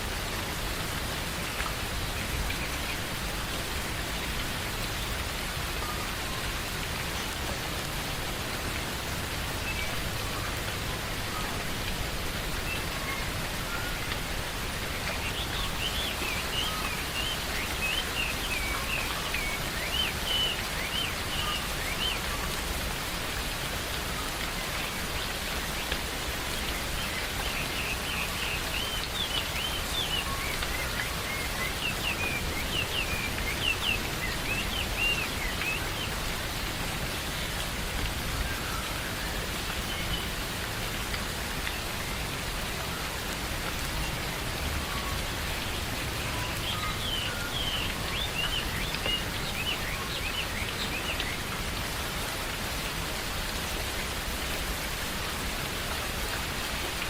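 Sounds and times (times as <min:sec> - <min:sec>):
steady rain falling: 0:00.0 - 0:57.0
small birds chirping: 0:24.2 - 0:40.7, 0:41.6 - 0:51.9.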